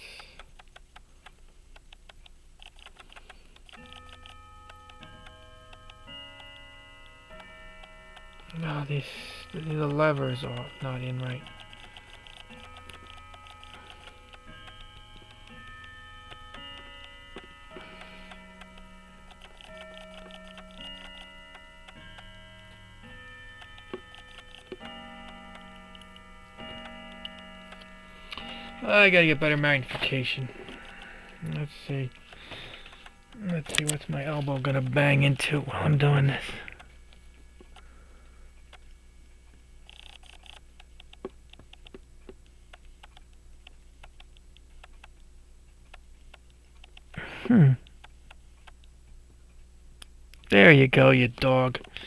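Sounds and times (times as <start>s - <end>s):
small tools tapping metal parts: 0.0s - 5.3s, 7.8s - 22.8s, 23.6s - 36.9s
handling clicks: 0.0s - 6.5s, 9.5s - 37.9s
rapid clock ticking: 0.0s - 45.2s, 50.3s - 52.0s
soft background music: 3.6s - 42.2s
faint sustained tones: 4.5s - 39.8s.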